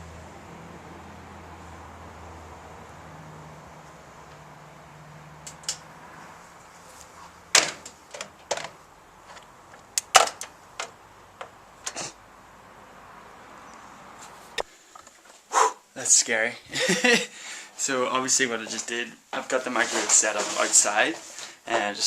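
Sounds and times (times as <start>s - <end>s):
light bulb cracking and popping: 10.0s - 10.9s.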